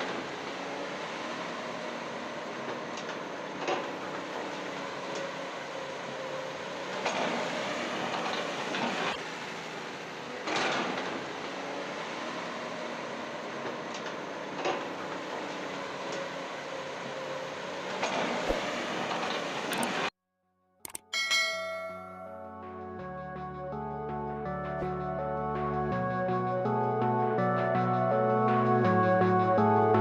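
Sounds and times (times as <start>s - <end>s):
sharp clicks: 20.8s - 21.1s.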